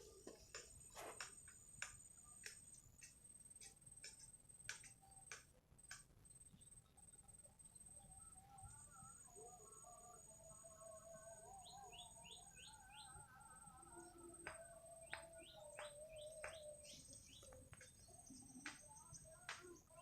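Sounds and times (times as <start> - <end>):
birdsong whistles and chirps: 6.5 - 20.0.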